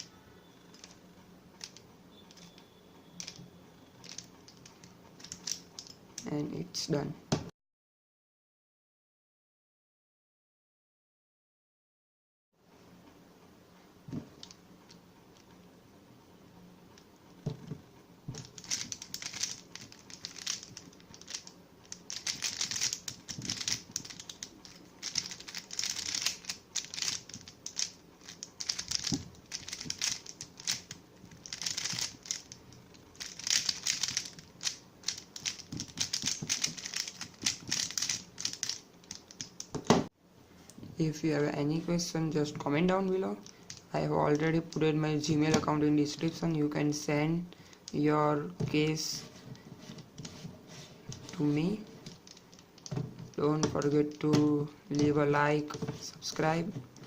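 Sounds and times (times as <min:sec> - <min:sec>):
puzzle cube twisting clicks: 0:00.7 - 0:01.0, 0:03.2 - 0:06.3, 0:18.4 - 0:39.8.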